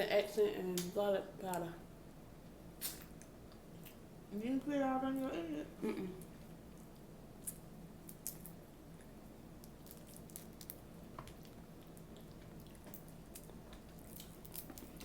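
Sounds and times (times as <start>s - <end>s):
steady low hum: 0.0s - 15.0s
wet chewing sounds: 6.3s - 15.0s.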